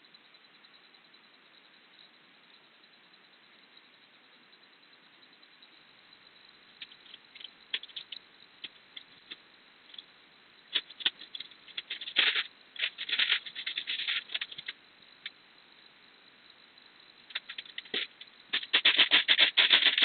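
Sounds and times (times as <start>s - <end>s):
cat scratching and rattling: 10.8s - 14.7s, 17.3s - 20.0s.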